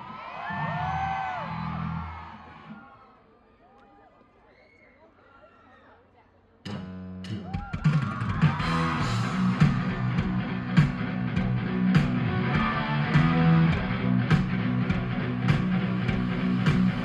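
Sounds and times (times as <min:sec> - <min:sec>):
bass guitar: 0:06.7 - 0:07.5, 0:08.2 - 0:17.0
drum hits: 0:07.6 - 0:17.0
distorted electric guitar: 0:08.5 - 0:17.0.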